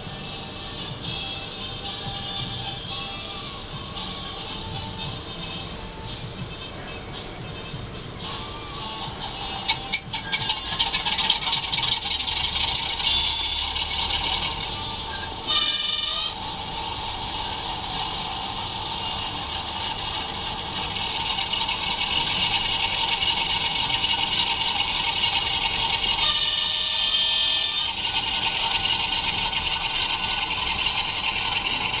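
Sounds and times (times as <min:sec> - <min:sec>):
diesel engine sound from small speaker: 0:00.0 - 0:32.0.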